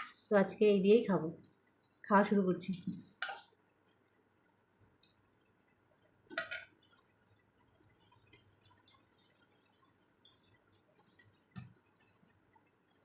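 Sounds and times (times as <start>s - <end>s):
food ticks and squishes: 3.1s - 13.0s.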